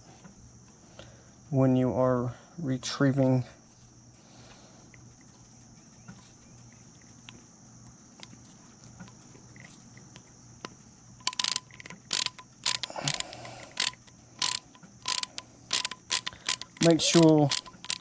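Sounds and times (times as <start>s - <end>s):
fishing reel ratcheting clicks: 11.2s - 18.0s
high-pitched hum: 11.2s - 18.0s.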